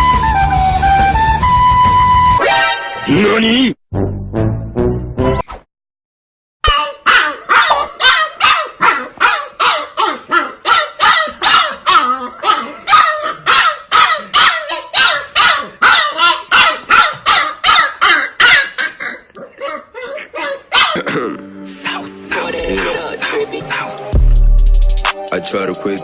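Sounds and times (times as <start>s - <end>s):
dog barking: 6.7s - 21.0s.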